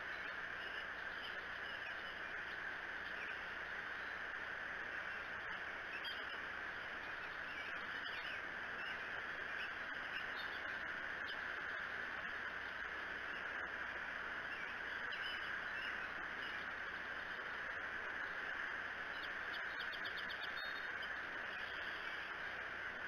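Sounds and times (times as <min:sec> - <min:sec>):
outdoor hiss: 0:00.0 - 0:23.0.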